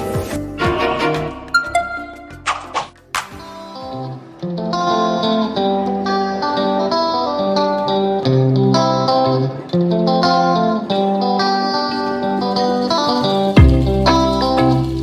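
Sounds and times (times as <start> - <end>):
plucked guitar melody: 0.2 - 15.0.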